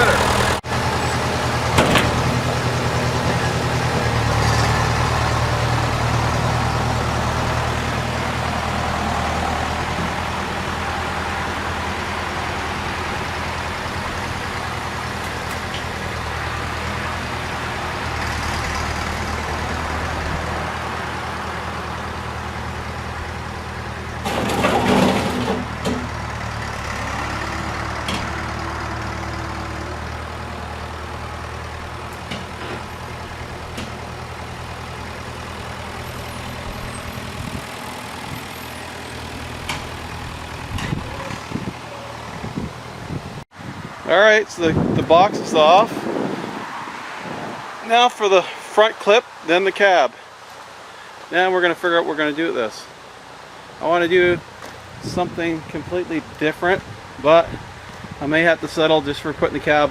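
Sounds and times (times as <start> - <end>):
tractor engine running: 0.0 - 43.4.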